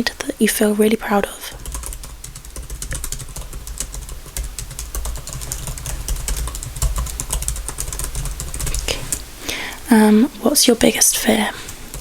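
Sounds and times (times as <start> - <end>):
rapid keyboard typing: 1.5 - 9.2, 10.8 - 12.0.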